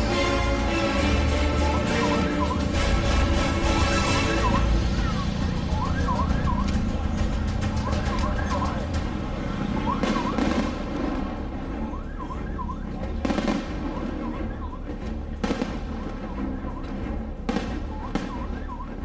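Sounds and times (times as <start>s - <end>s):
warbling chirp: 0.0s - 15.0s
fireworks bangs and crackle: 0.0s - 19.0s
low rumble: 0.0s - 19.0s.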